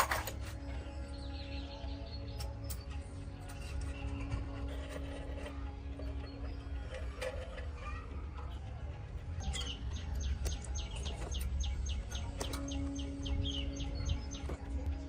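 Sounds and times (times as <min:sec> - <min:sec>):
steady low rumble: 0:08.1 - 0:15.0.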